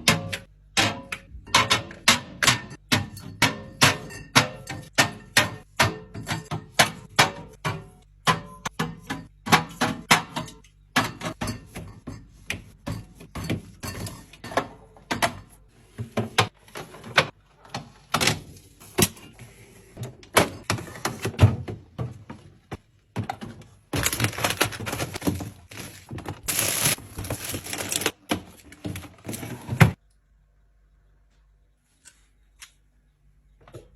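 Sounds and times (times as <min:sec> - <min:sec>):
containers clacking on fridge shelves: 0:20.0 - 0:30.0.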